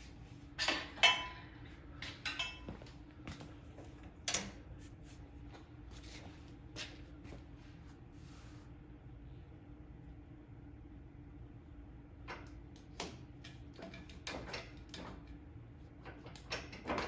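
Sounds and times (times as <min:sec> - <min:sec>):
faint steady hum: 0:00.0 - 0:16.7
tools and metal parts clacking: 0:00.6 - 0:02.8, 0:04.2 - 0:04.6.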